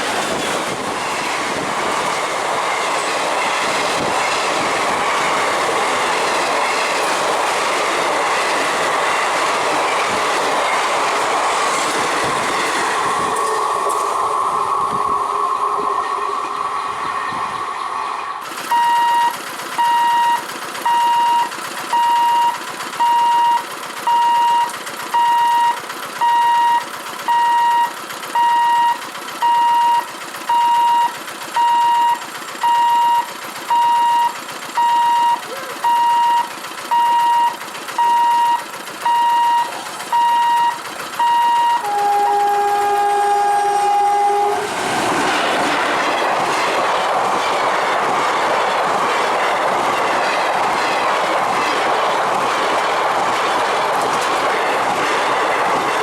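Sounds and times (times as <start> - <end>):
train passing with clatter: 0.0 - 56.0
train two-note horn: 12.8 - 18.4, 41.4 - 44.9
level crossing warning beeper: 13.1 - 44.6.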